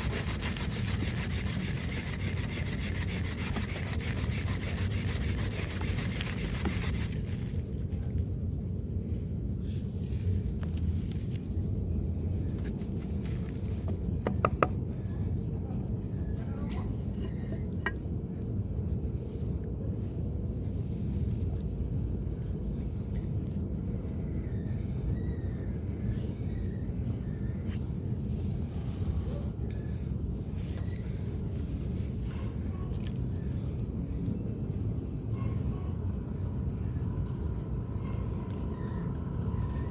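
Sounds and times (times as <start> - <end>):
low steady rough noise: 0.0 - 14.5
cricket trilling: 0.0 - 39.9.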